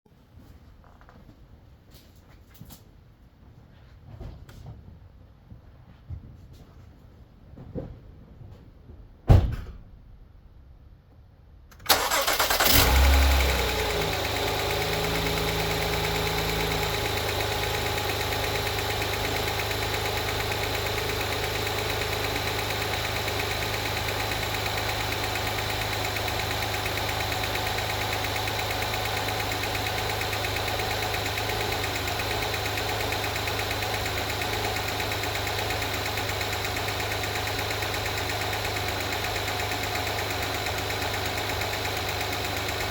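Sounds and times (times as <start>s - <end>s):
car engine starting and idling: 11.7s - 42.9s
fast engine ticking: 11.9s - 42.9s.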